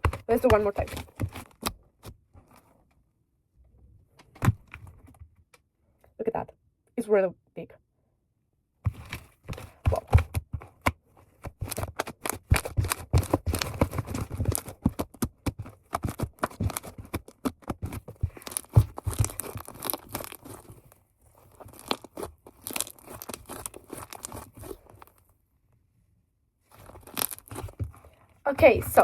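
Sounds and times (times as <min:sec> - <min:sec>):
slime crackling and popping: 0:11.5 - 0:20.9, 0:21.6 - 0:24.8, 0:26.8 - 0:27.9.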